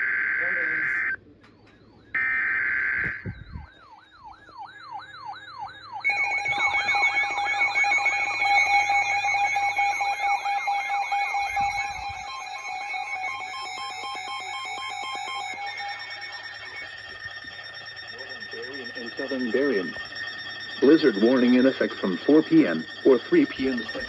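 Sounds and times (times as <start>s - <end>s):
steady beeping alarm tones: 0.0s - 24.0s
warbling siren tone: 0.0s - 24.0s
raspy digital data burst: 6.0s - 24.0s.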